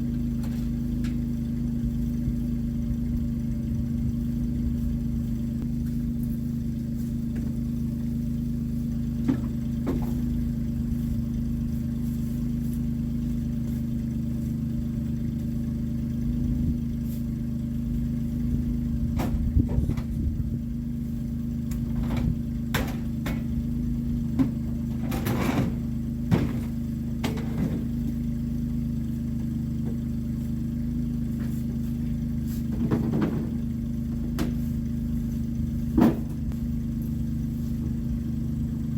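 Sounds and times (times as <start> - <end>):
engine running steadily: 0.0 - 38.9
knocks and rattles: 21.6 - 23.7, 24.3 - 28.1, 32.7 - 34.7, 35.9 - 36.6.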